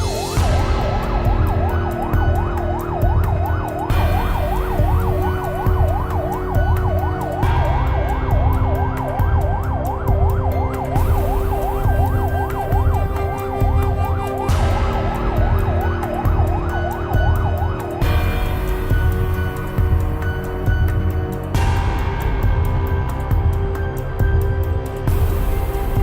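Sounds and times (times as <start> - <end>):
siren in fast yelp mode: 0.1 - 19.5.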